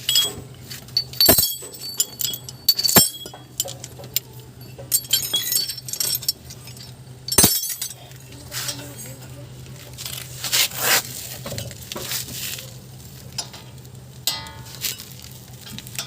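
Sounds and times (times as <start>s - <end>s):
metal tools clinking: 0.0s - 9.1s.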